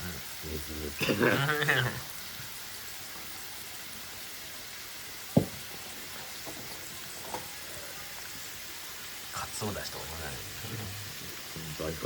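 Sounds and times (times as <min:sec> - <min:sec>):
food sizzling in a hot pan: 0:00.0 - 0:12.0
sharp knocks: 0:05.4 - 0:05.8.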